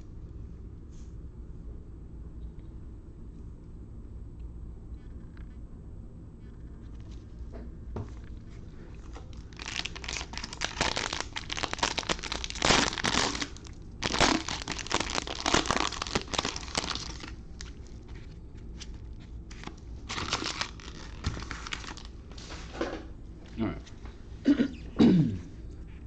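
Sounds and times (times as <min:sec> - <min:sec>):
plastic wrapper tearing and crinkling: 0:09.0 - 0:22.2.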